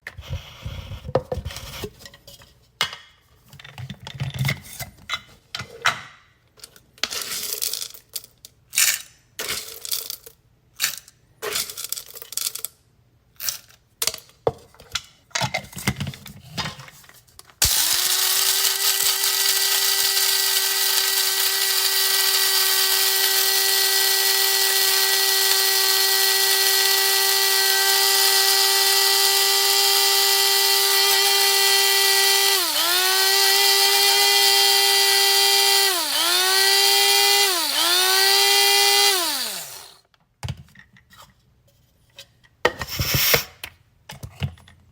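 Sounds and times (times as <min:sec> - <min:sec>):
coffee grinder motor whining: 0:17.6 - 0:40.0.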